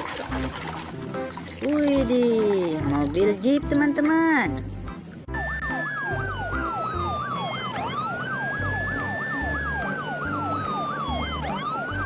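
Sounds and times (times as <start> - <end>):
electronic siren yelp and wail: 5.3 - 12.0.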